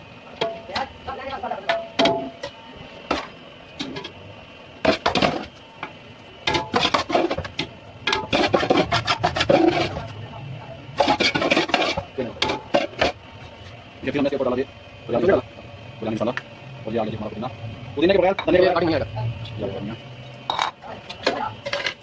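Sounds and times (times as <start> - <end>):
metal utensil scraping a pot: 6.7 - 7.5, 8.1 - 10.1, 11.0 - 13.1.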